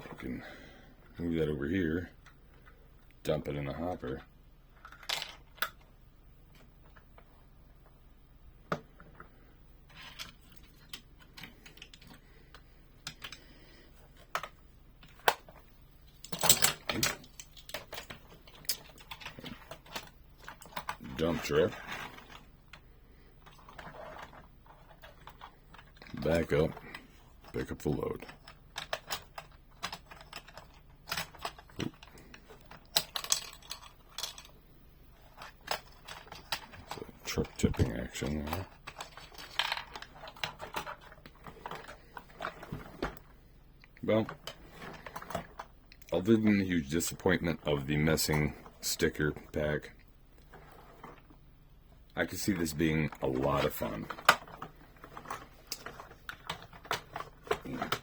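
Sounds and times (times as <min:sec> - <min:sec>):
plastic toy parts clicking: 0:16.2 - 0:21.0, 0:28.2 - 0:34.5, 0:35.3 - 0:42.7.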